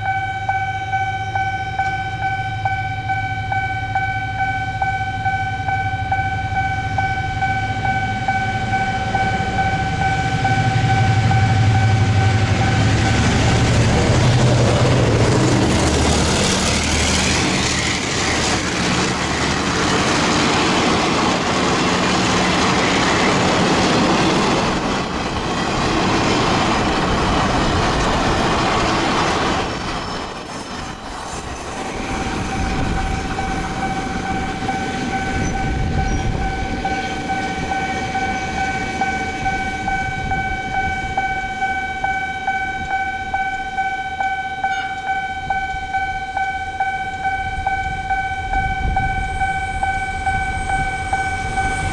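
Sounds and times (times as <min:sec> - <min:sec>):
level crossing warning chime: 0:00.0 - 0:13.4, 0:32.3 - 0:51.9
train low drone: 0:00.0 - 0:51.9
train wheels rushing on rails: 0:07.7 - 0:43.8, 0:47.2 - 0:51.9.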